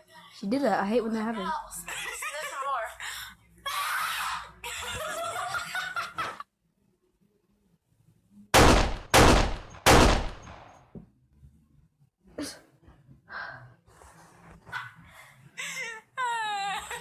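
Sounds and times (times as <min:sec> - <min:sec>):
loud sharp bangs: 0:08.6 - 0:10.8.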